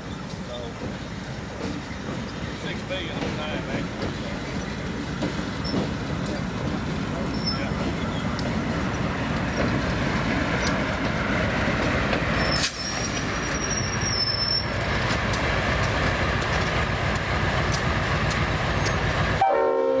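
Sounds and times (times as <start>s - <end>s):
diesel locomotive rumble: 0.0s - 20.0s
train wheels clicking: 0.1s - 19.4s
locomotive air horn: 19.4s - 20.0s.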